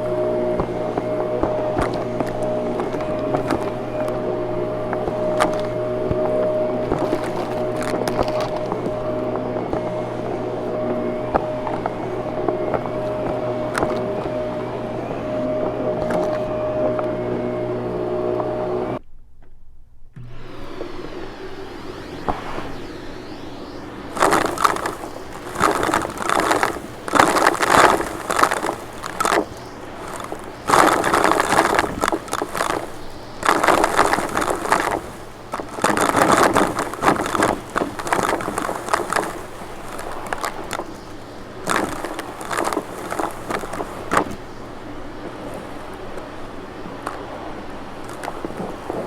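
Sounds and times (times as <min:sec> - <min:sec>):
vacuum cleaner running: 0:00.0 - 0:19.0, 0:20.2 - 0:47.9.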